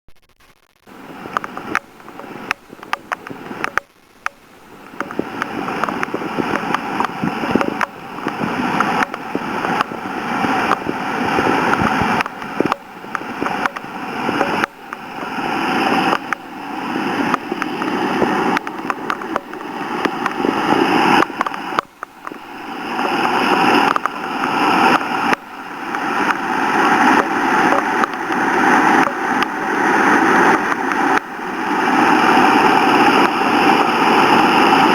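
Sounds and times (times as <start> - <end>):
sharp clicks: 0.5 - 15.3, 16.1 - 16.5, 17.2 - 20.5, 21.1 - 26.4
floodwater rushing roar: 0.9 - 34.9.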